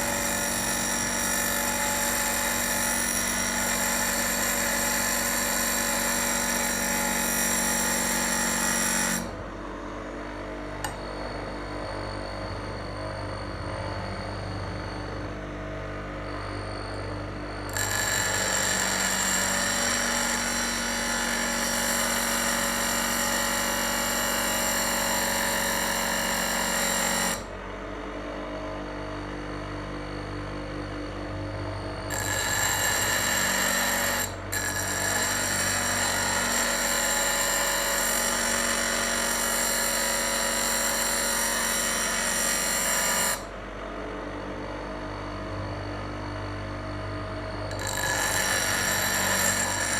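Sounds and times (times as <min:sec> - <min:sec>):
grinder motor hum: 0:00.0 - 0:49.9
knife grinding on stone wheel: 0:17.7 - 0:23.2, 0:32.1 - 0:43.4, 0:47.6 - 0:49.9.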